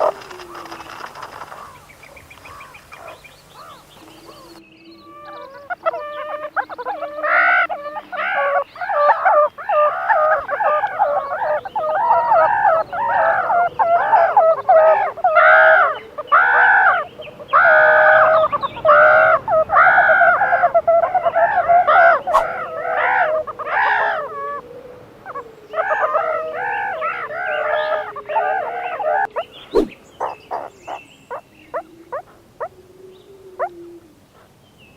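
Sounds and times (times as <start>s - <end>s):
meerkat calls: 3.0s - 24.6s, 25.2s - 31.0s.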